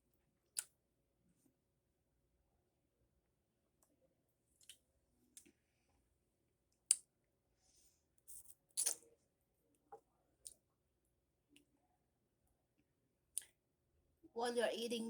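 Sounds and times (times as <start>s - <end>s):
licking and sucking lollipop: 4.6s - 4.8s.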